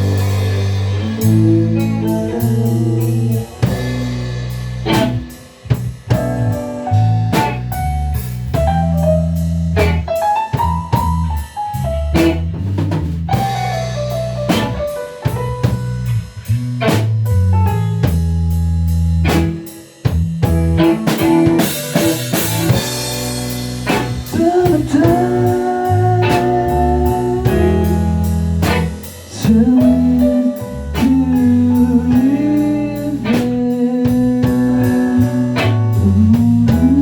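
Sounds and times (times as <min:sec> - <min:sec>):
band playing blues rock: 0:00.0 - 0:37.0.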